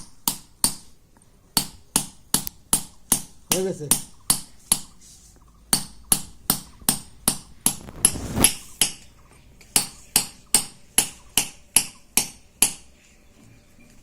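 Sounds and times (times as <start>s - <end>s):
hammer tapping chisel on stone: 1.6s - 4.9s, 5.7s - 7.8s, 9.6s - 12.9s.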